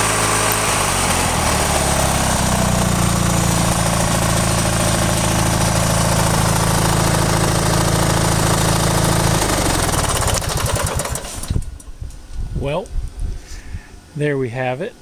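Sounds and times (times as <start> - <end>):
mower engine running: 0.0 - 11.8.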